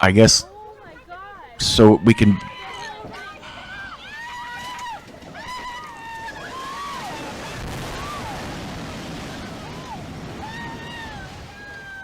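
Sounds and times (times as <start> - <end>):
people crying out: 0.0 - 12.0
landslide debris rumbling: 2.5 - 12.0.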